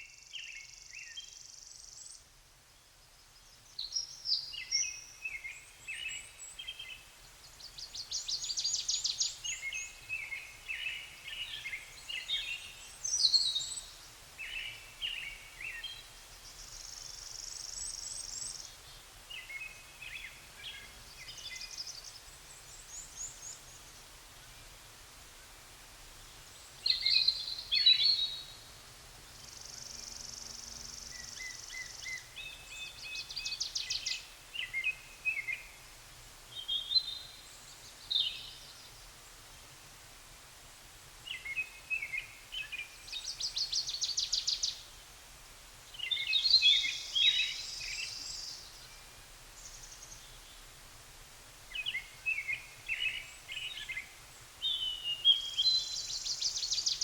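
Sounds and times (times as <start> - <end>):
songbirds chirping and trilling: 0.0 - 24.8, 25.4 - 35.9, 41.2 - 50.8.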